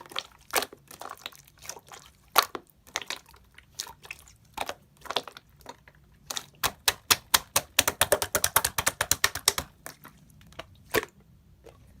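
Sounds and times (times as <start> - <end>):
keyboard typing: 6.7 - 9.7.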